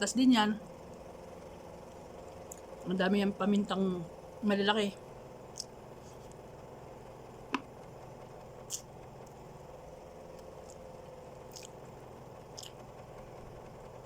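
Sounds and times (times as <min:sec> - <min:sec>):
steady low hum: 0:00.0 - 0:14.0
person chewing: 0:10.6 - 0:11.9, 0:12.5 - 0:12.8.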